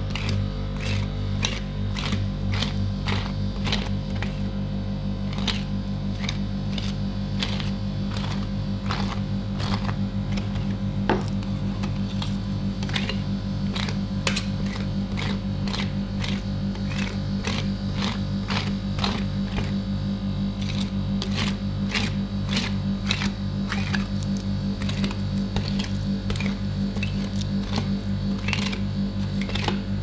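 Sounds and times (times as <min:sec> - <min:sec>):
cooling machine hum: 0:00.0 - 0:30.0
metal spatulas scraping steel plate: 0:05.3 - 0:19.8, 0:20.6 - 0:29.9.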